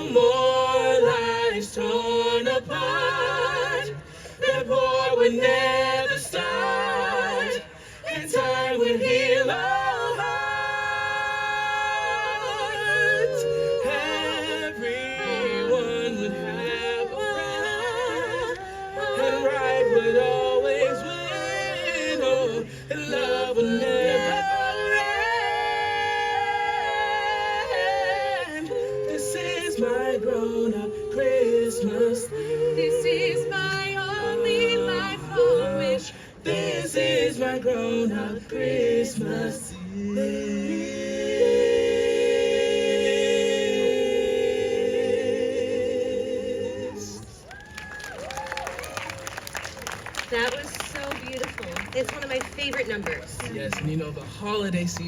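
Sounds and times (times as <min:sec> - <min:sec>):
vocal group singing in harmony: 0:00.0 - 0:53.7.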